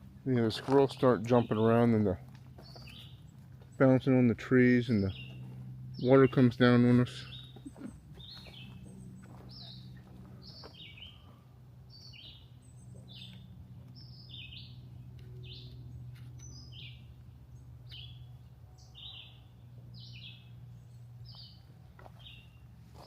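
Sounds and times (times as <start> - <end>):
low steady hum: 0.0 - 23.0
small bird chirping: 2.6 - 3.3, 7.2 - 11.3, 11.9 - 22.6.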